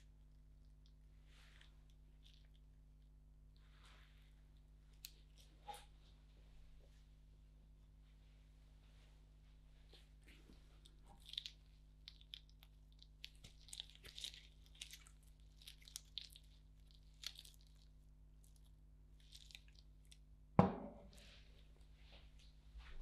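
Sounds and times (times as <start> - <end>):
soft crunching and scraping: 0.8 - 2.7, 3.6 - 7.1, 8.0 - 18.6
sharp knock: 20.6 - 21.0.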